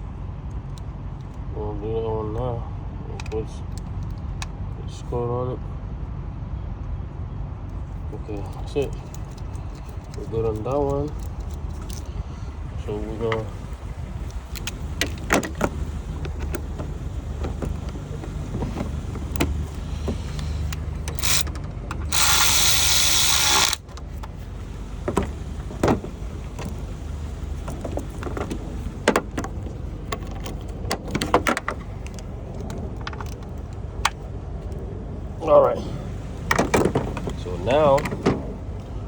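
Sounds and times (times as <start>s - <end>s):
steady low hum: 0.0s - 39.0s
hand tools clicking and knocking: 12.9s - 24.4s.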